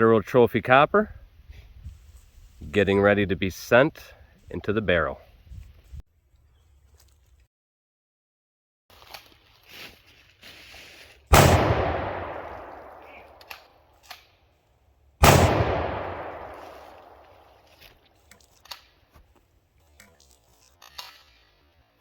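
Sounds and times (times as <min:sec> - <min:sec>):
shotgun shots with echo: 0:11.3 - 0:13.6, 0:15.2 - 0:17.6.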